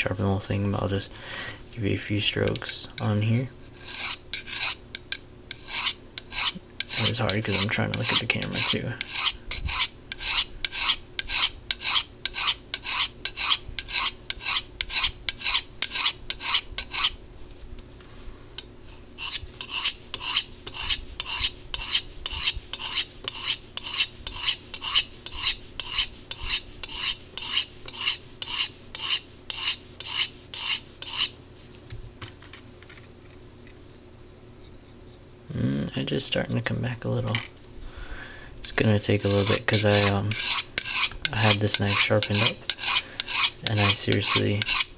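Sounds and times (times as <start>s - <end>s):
knife scraping on sharpening rod: 2.4s - 17.2s, 18.6s - 31.4s, 38.6s - 44.9s.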